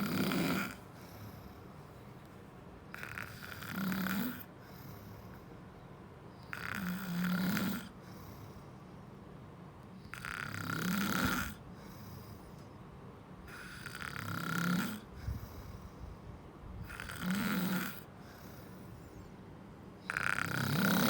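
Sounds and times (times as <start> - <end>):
rasping snores: 0.0 - 1.4, 2.9 - 5.3, 6.4 - 8.4, 10.0 - 12.4, 13.5 - 15.8, 16.8 - 19.0, 20.1 - 21.0
quiet breathing: 0.0 - 3.6, 4.3 - 6.6, 7.8 - 10.6, 11.3 - 14.1, 15.0 - 21.0.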